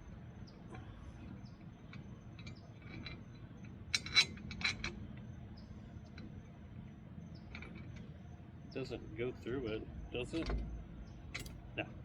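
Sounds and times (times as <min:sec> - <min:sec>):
metallic clicks of crane hook: 0:11.3 - 0:11.6.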